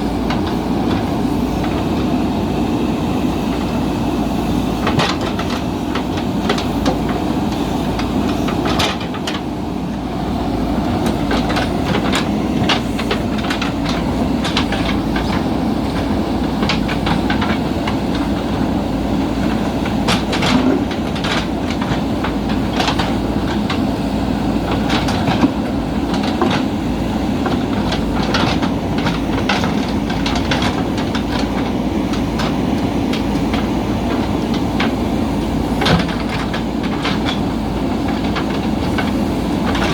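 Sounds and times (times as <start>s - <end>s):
diesel engine running under load: 0.0s - 39.9s
irregular clanks and knocks: 27.4s - 39.9s.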